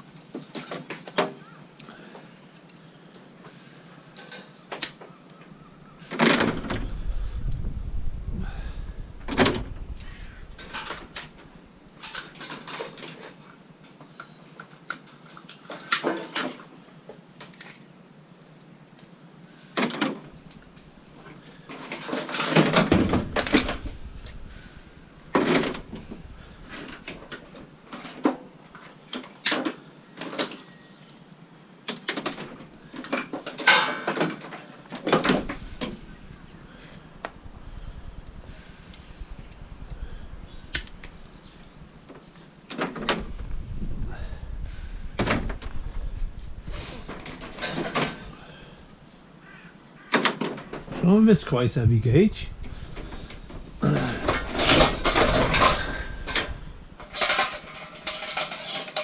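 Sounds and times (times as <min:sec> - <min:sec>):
scrap metal clattering: 0:52.8 - 0:59.0.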